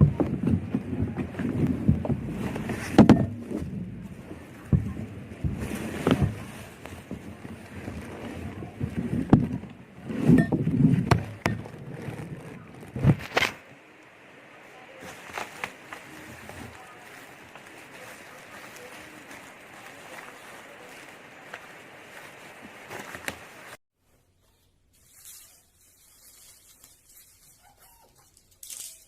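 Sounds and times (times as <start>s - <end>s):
handling knocks and clicks: 0.0s - 13.6s.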